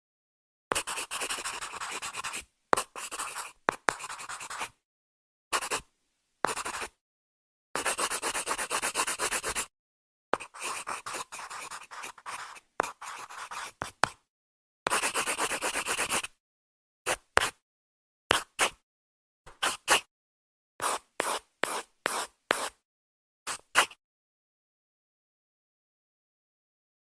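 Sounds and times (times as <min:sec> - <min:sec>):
pencil writing on paper: 0:00.7 - 0:04.8, 0:05.5 - 0:05.8, 0:06.4 - 0:07.0, 0:07.8 - 0:09.7, 0:10.4 - 0:14.2, 0:14.9 - 0:16.4, 0:17.1 - 0:17.6, 0:18.3 - 0:18.8, 0:19.5 - 0:20.1, 0:20.8 - 0:22.8, 0:23.5 - 0:24.0.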